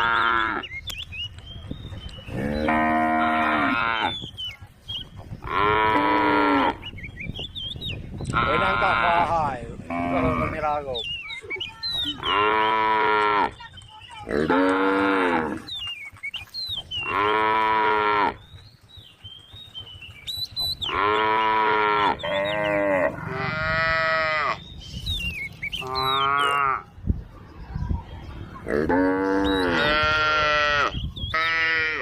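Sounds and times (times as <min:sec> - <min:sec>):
cows mooing: 0:00.0 - 0:00.6, 0:02.3 - 0:04.2, 0:05.4 - 0:06.8, 0:08.3 - 0:10.8, 0:12.1 - 0:13.6, 0:14.2 - 0:15.7, 0:17.0 - 0:18.4, 0:20.8 - 0:24.6, 0:25.8 - 0:26.9, 0:28.6 - 0:32.0.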